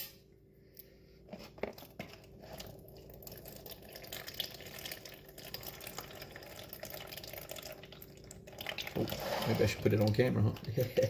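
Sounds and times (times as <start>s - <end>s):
juice pouring into container: 1.8s - 11.0s
liquid splashing and dripping: 2.5s - 11.0s.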